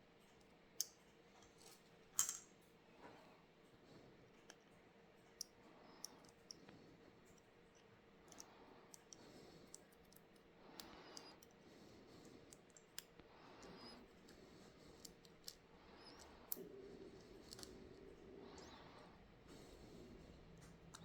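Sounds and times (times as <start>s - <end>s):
small tool clicks and taps: 7.3s - 11.6s.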